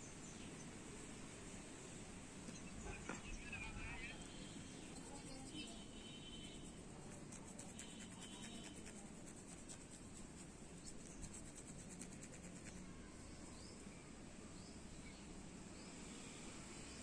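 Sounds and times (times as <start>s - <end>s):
fingers scratching through hair: 4.7s - 13.0s.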